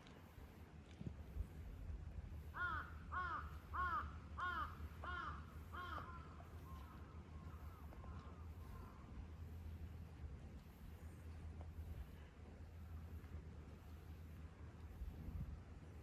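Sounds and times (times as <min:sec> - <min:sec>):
crow cawing: 0:02.6 - 0:07.0.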